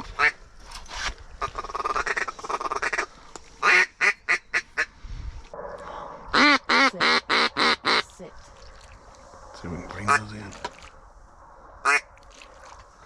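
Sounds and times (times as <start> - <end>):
duck call chattering: 1.4 - 4.9, 6.4 - 8.0
loud hen quacks from duck call: 1.4 - 4.9, 6.3 - 8.0.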